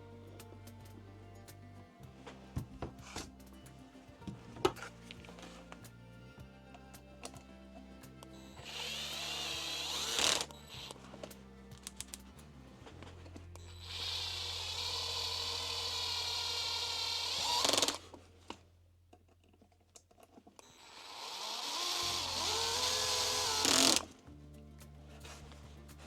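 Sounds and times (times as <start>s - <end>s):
background music: 0.0s - 16.0s, 22.0s - 26.0s
electric screwdriver driving screws: 8.6s - 10.9s, 13.7s - 18.1s, 20.7s - 24.1s.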